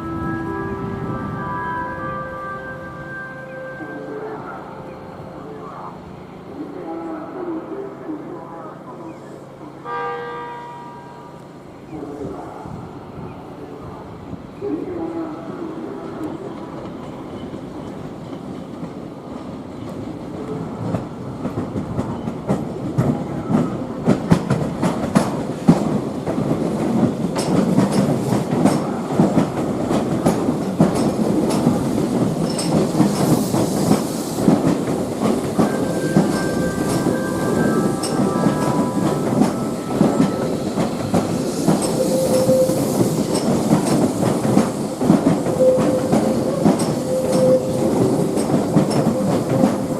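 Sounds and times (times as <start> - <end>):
train wheels clicking over rail joints: 16.6 - 49.9
train wheels squealing: 35.5 - 44.0, 44.8 - 49.9.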